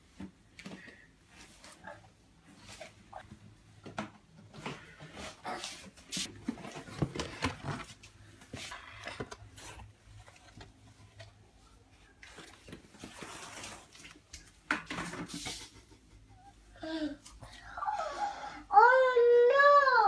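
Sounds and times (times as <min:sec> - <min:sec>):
rustling: 0:04.7 - 0:14.6.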